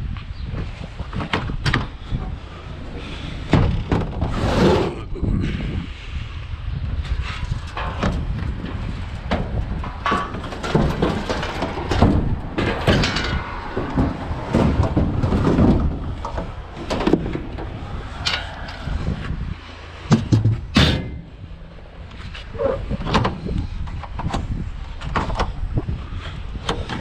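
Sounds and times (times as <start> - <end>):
wind buffeting microphone: 0.0 - 27.0
scrap appliances clattering: 7.7 - 19.0.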